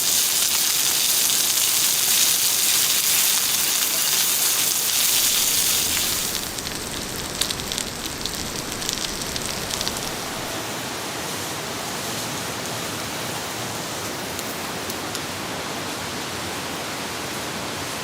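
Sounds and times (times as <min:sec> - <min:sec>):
rain falling: 0:00.0 - 0:18.0
drops ticking: 0:04.9 - 0:10.5.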